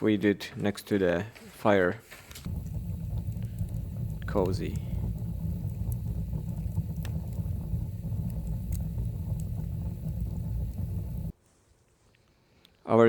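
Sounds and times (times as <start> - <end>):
fire crackles: 2.1 - 11.4
wood fire rumbling: 2.4 - 11.3.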